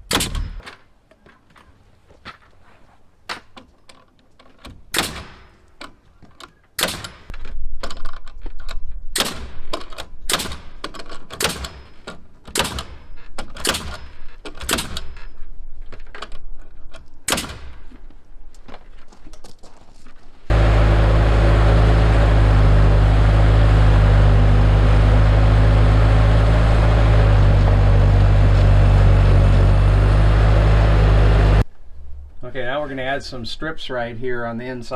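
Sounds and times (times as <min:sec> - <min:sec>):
nails hammered into plywood: 0:04.9 - 0:05.8, 0:06.8 - 0:07.4, 0:09.2 - 0:15.1
loud motor drone: 0:20.5 - 0:31.6.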